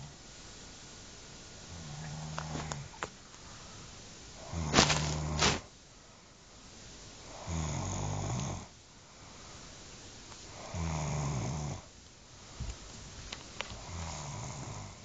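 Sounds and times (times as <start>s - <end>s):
quiet breathing: 1.6s - 15.0s
person snoring: 4.4s - 5.6s, 7.3s - 8.7s, 10.5s - 11.8s, 13.8s - 15.0s.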